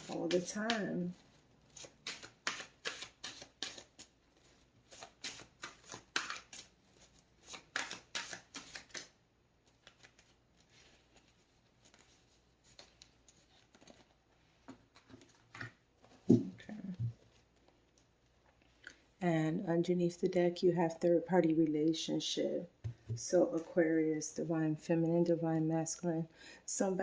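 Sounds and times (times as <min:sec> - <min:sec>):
cards being shuffled by hand: 0:00.0 - 0:18.7.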